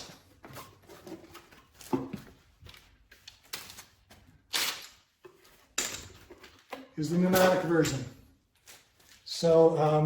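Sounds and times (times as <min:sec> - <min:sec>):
tools knocking and clicking: 0:05.2 - 0:08.2.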